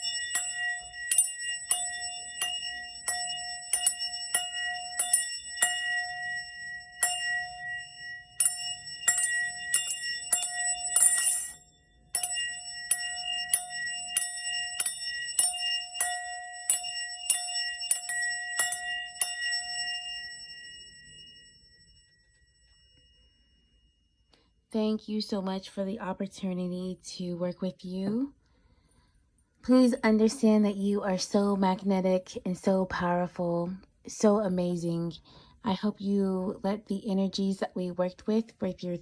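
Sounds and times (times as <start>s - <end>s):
small bell ringing: 0.0s - 24.0s.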